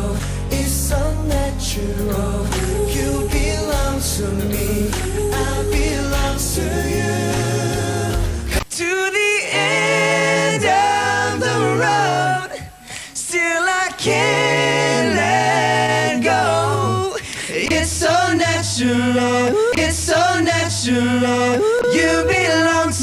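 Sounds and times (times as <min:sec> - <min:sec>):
low bass line: 0:00.0 - 0:08.6
male vocal group singing in harmony: 0:00.0 - 0:23.0.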